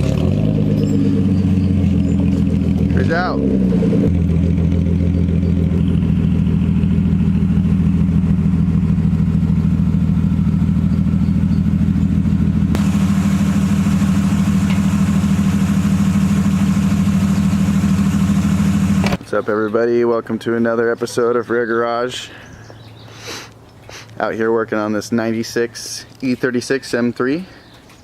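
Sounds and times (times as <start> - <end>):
car engine running: 0.0 - 19.2.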